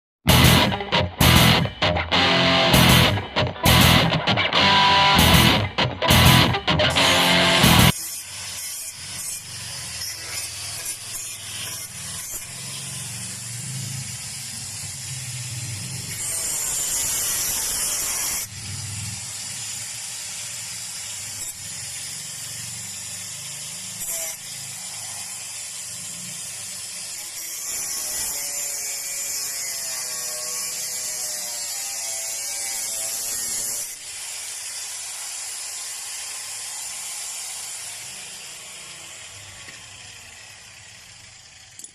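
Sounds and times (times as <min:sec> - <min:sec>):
metalworking rattling and rasping: 0:05.2 - 0:14.9.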